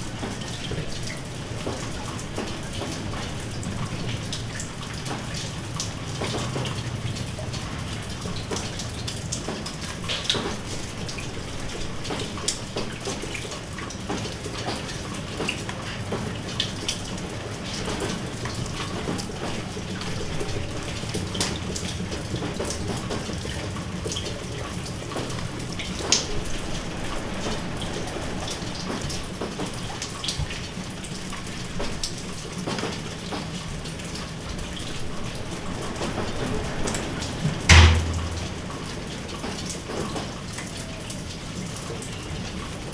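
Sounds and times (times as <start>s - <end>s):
rain falling: 0.0s - 42.9s
raindrops ticking: 0.0s - 42.9s
loud thump: 37.6s - 38.8s.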